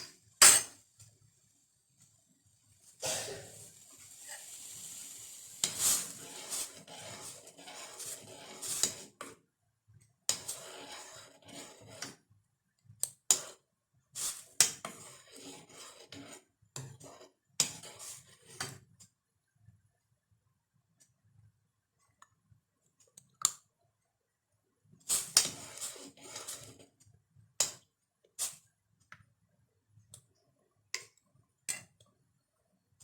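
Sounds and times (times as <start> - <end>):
spoon stirring and scraping saucepan: 3.4 - 9.4, 10.3 - 12.2, 13.0 - 19.0, 25.0 - 29.3, 31.0 - 32.1.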